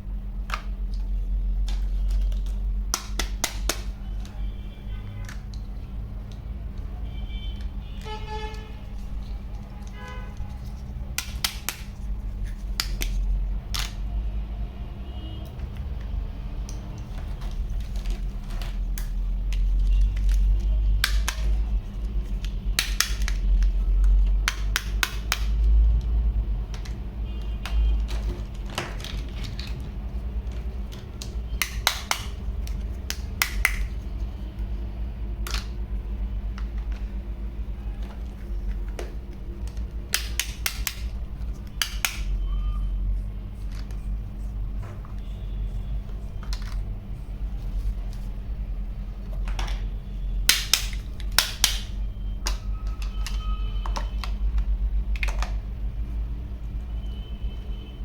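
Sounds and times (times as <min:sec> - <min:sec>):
steady low hum: 0:00.0 - 0:28.8, 0:29.6 - 0:58.0
toys clicking and knocking: 0:01.6 - 0:03.9, 0:07.6 - 0:14.0, 0:16.6 - 0:25.7, 0:26.6 - 0:34.4, 0:35.4 - 0:35.8, 0:38.0 - 0:42.4, 0:50.5 - 0:55.7.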